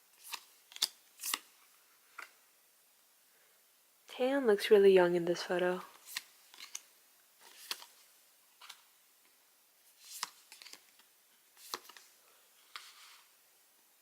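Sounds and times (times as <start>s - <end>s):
photo cards sliding and tapping: 0.2s - 2.4s, 6.0s - 8.0s, 8.6s - 8.8s, 10.0s - 13.3s.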